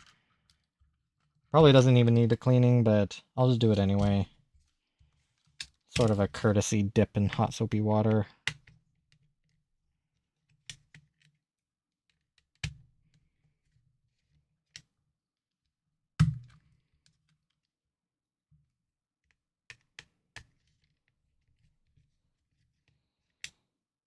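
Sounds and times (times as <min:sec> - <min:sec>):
plastic parts and tools clicking: 0:05.6 - 0:06.4.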